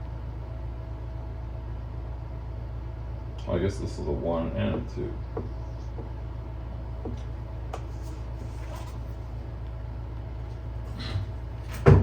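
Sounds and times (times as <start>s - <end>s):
low room hum: 0.0s - 12.0s.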